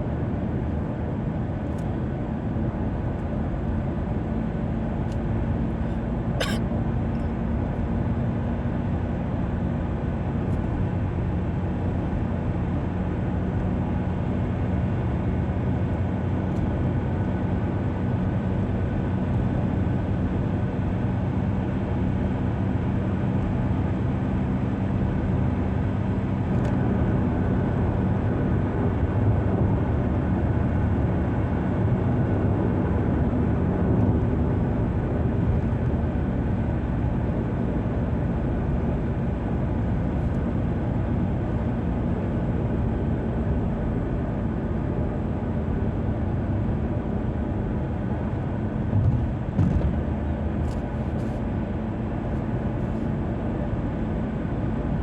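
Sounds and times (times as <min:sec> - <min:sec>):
car engine hum: 0:00.2 - 0:55.0
sharp squeak: 0:06.4 - 0:06.6
tyre and road noise: 0:48.8 - 0:51.5.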